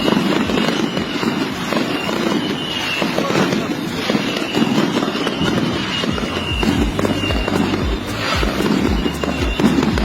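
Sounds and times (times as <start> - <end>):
background music with bass beat: 6.1 - 10.0.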